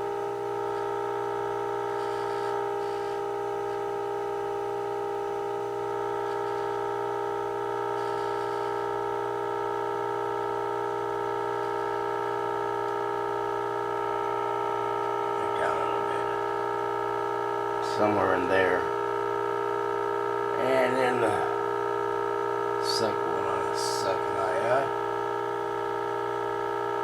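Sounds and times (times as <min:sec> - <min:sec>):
steady radio test tone: 0:11.3 - 0:19.4, 0:20.3 - 0:25.1.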